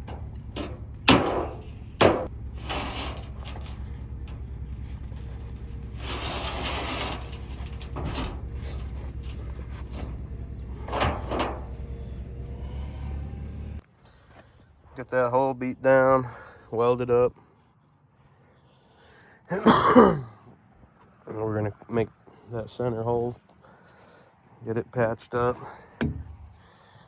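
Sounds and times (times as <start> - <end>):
loud metal impacts: 0.0 - 12.4, 26.0 - 26.6
welder engine droning: 0.0 - 13.8.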